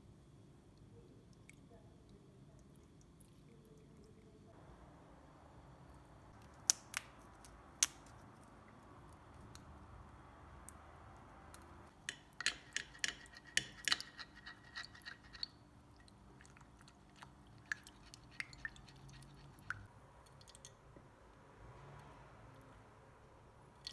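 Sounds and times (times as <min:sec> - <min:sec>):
kitchen utensils clicking and tapping: 0:11.9 - 0:15.5.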